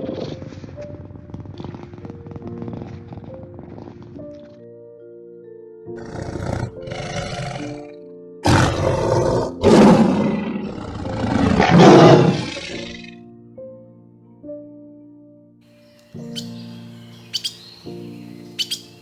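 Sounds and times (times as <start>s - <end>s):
big cat roaring: 0.0s - 1.8s, 6.0s - 13.2s
background music: 0.0s - 19.0s.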